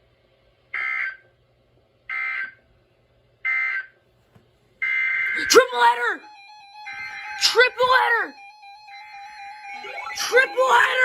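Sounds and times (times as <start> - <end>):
buzzing digital data tones: 6.2 - 11.0.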